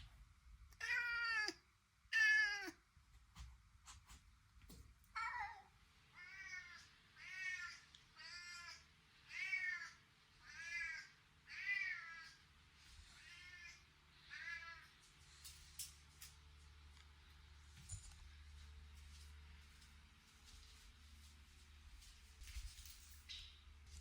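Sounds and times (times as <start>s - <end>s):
cat meowing: 0.8s - 2.8s, 5.2s - 12.4s.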